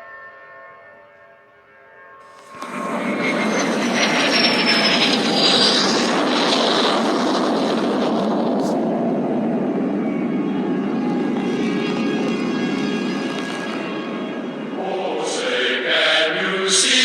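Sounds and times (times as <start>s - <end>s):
jet aircraft roar: 2.2s - 17.0s.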